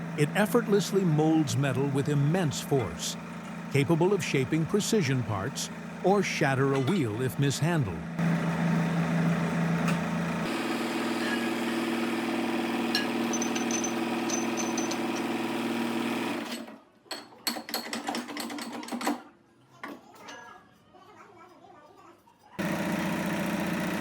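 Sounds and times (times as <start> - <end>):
hydraulic pump humming: 0.0 - 16.4, 22.6 - 24.0.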